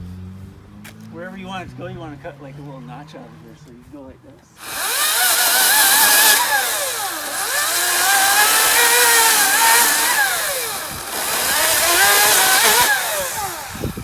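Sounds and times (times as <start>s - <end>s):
chainsaw cutting into tree: 4.6s - 14.0s.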